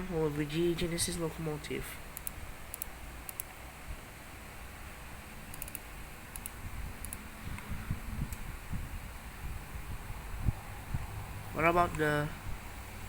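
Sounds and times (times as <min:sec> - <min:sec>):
computer keyboard clicks: 0:02.2 - 0:03.5, 0:05.5 - 0:07.7.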